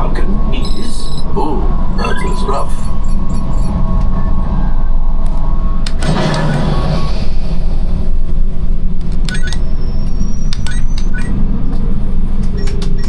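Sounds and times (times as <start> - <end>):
low rumble of simulator ride: 0.0 - 13.0
hissing whoosh: 2.8 - 9.0
sharp clicks: 5.2 - 6.8, 9.0 - 13.0.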